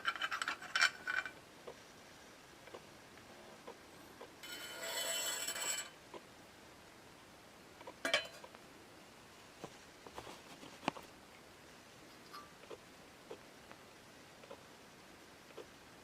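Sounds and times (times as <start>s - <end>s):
metal parts scraping: 0.0s - 1.4s, 4.4s - 6.0s.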